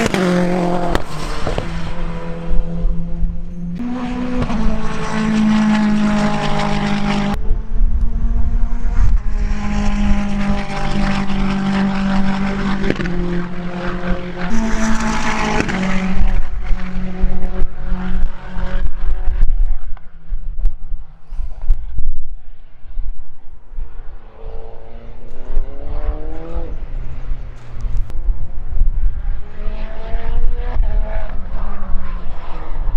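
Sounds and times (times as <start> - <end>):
race car engine running hard: 0.0 - 20.4.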